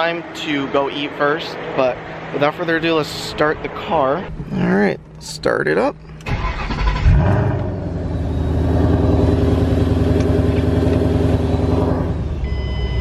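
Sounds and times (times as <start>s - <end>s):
engine cranking on starter: 6.2s - 7.7s.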